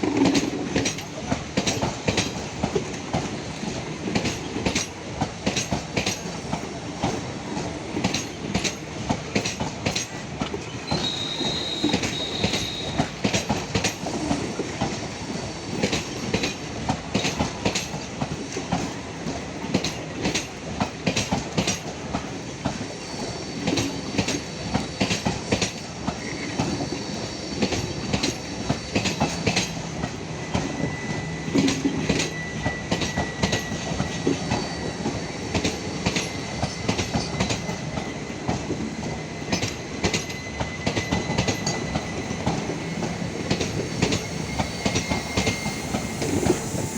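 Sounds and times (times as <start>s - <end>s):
train wheels clattering: 0.0s - 46.9s
high wheel squeal: 10.6s - 13.2s, 22.9s - 46.9s.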